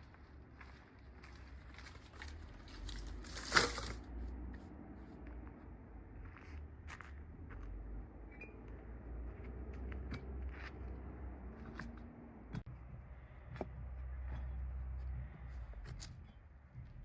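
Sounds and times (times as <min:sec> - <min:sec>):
steady low rumble: 0:03.9 - 0:17.0.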